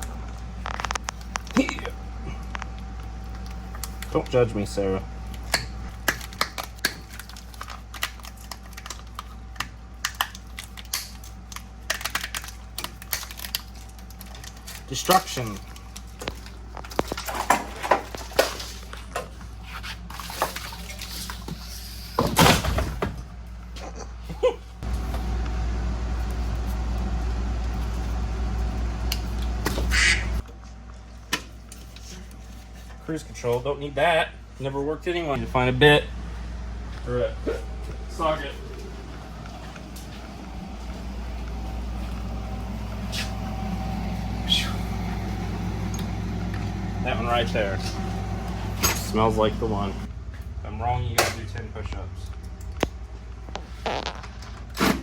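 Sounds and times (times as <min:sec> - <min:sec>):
low mechanical hum: 0:00.0 - 0:55.0.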